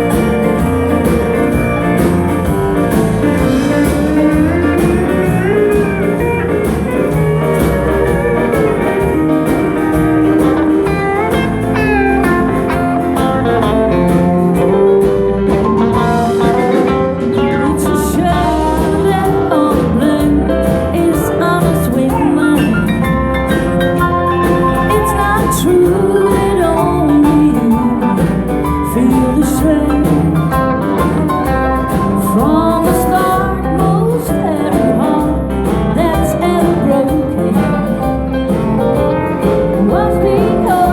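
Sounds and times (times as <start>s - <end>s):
guitar: 0.0s - 40.9s
live country band music: 0.0s - 40.9s.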